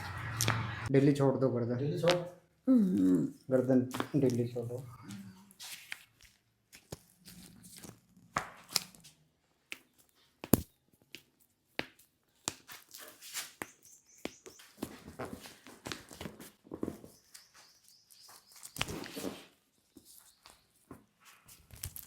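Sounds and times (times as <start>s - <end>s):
hands rubbing skin and clothing: 5.1s - 16.3s.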